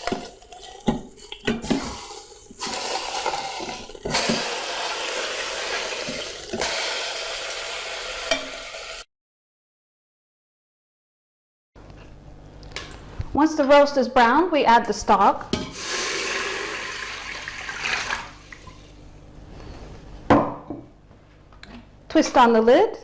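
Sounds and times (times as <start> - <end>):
meat sizzling in oil: 0.0 - 9.0.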